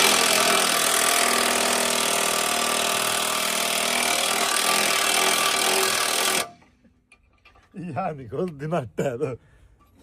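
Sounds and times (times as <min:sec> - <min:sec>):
power tool running: 0:00.0 - 0:06.6.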